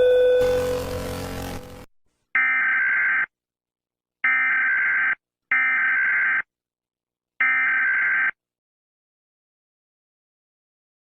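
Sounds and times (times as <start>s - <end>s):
harsh buzzing data bursts: 0.2s - 1.9s.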